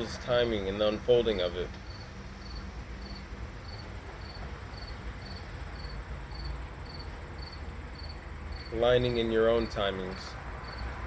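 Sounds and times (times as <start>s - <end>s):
cricket chirping: 1.9s - 9.7s, 10.6s - 11.0s.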